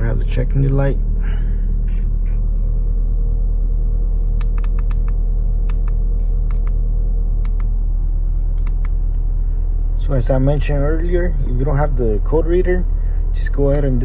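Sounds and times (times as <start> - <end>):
car engine idling: 0.0 - 14.0
light irregular clicks: 4.3 - 6.8, 7.4 - 7.8, 8.5 - 9.2.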